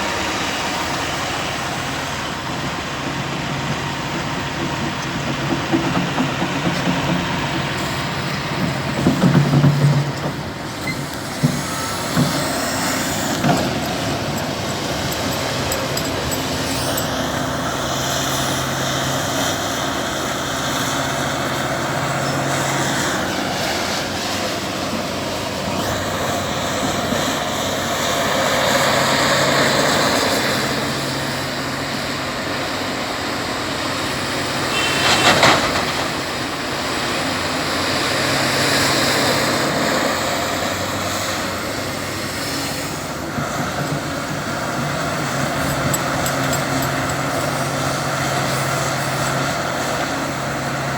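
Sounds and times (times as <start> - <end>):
excavator diesel engine: 0.0 - 50.9
hydraulic whine: 0.0 - 50.9
metallic clanks: 5.8 - 17.6, 43.3 - 48.0.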